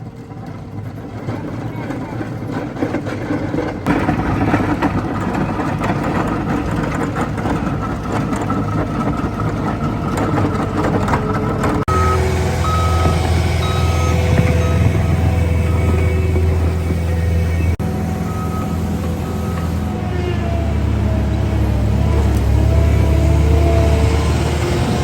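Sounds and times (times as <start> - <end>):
diesel machinery running: 0.0 - 25.0
reversing alarm beeping: 11.9 - 20.0.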